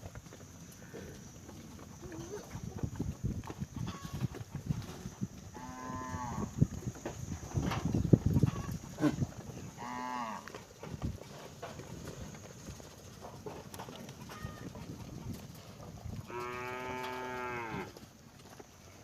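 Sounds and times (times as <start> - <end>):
animals knocking and clattering: 6.4 - 19.0.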